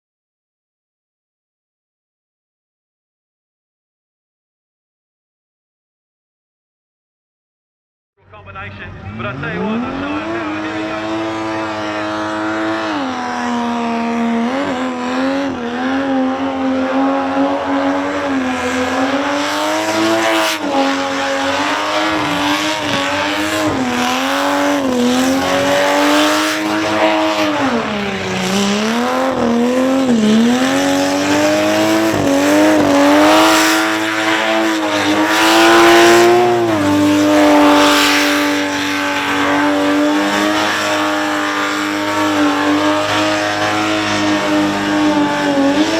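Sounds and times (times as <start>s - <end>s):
car engine revving high: 8.2s - 45.9s
spinning tyres hissing: 17.6s - 45.9s.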